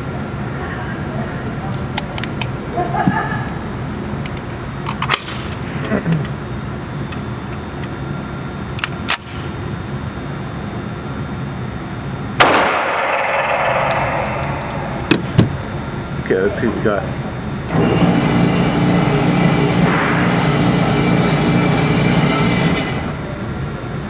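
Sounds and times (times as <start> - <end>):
steady low hum: 0.0 - 24.0
pistol gunshots: 12.4 - 15.3.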